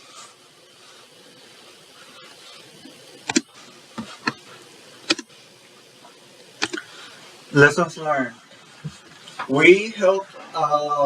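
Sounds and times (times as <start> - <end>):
faint steady hiss: 0.0 - 11.0
sharp clicks: 3.2 - 3.5, 5.1 - 5.3, 6.6 - 6.9.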